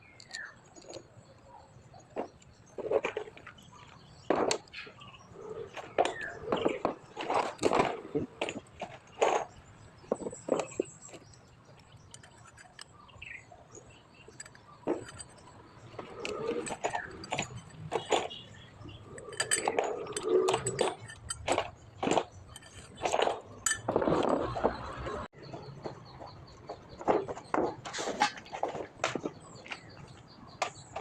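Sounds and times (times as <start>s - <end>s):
metallic clinks of hand tools: 13.8s - 24.0s.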